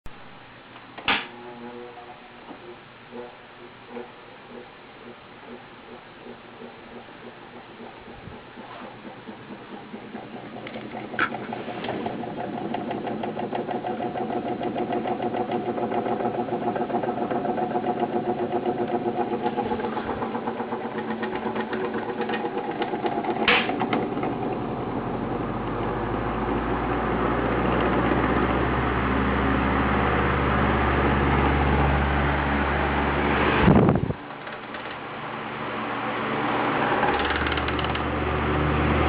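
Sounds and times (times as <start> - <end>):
low steady hum: 0.1 - 13.2
laptop rattling buzz: 36.4 - 38.4.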